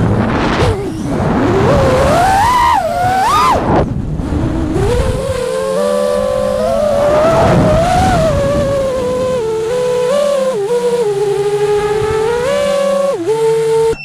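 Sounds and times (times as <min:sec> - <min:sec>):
drone motors whining: 0:00.0 - 0:14.0.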